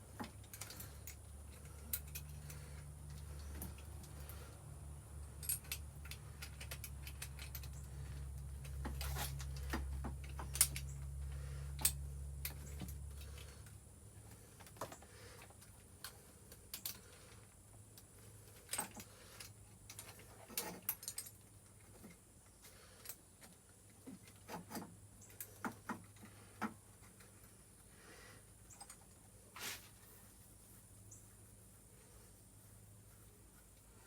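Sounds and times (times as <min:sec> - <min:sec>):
faint low hum: 0:00.0 - 0:34.0
tools clicking and tapping metal: 0:00.1 - 0:04.3, 0:05.2 - 0:11.1.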